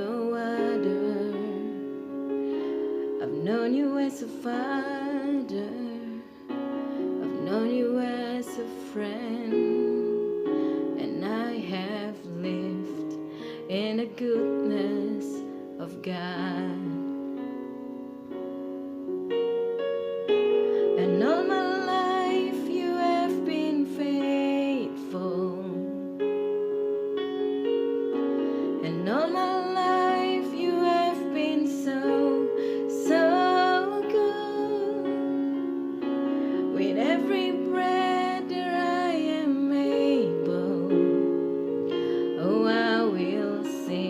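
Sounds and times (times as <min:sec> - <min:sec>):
woman singing with vibrato: 0:00.0 - 0:02.0, 0:03.2 - 0:06.4, 0:07.2 - 0:17.1, 0:20.8 - 0:26.1, 0:28.6 - 0:35.6, 0:36.5 - 0:44.0
sustained keyboard chords: 0:00.0 - 0:44.0.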